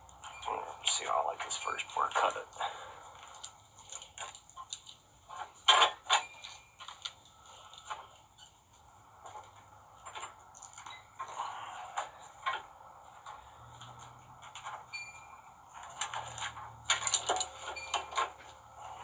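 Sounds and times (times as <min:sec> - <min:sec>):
metal cable clicks and scrapes: 0:03.2 - 0:08.6, 0:09.3 - 0:19.0.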